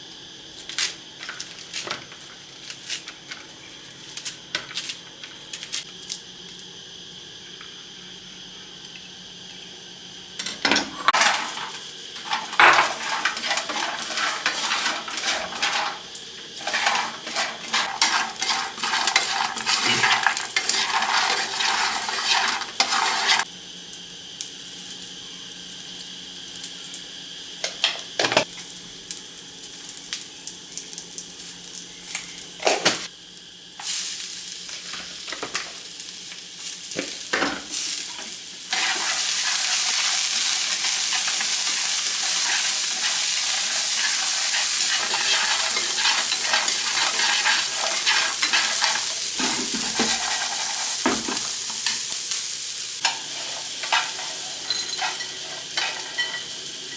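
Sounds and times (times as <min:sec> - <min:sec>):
food frying in a pan: 0:00.0 - 0:56.9.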